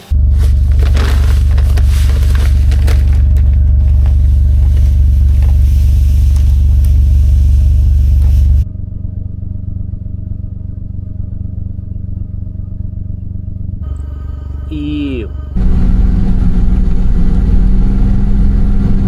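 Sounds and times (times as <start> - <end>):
rattling: 0.0 - 8.6
vehicle engine rumbling: 0.0 - 19.0.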